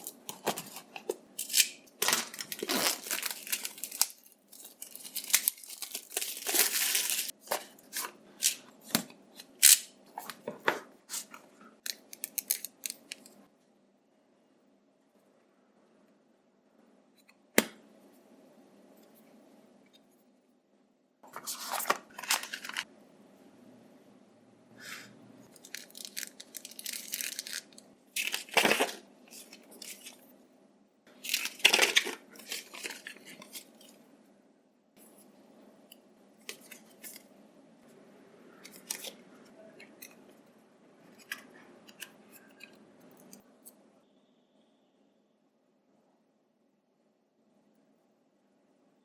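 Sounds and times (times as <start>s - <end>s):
packaging rustling and tearing: 0.0s - 8.6s, 25.6s - 30.2s, 31.2s - 33.7s.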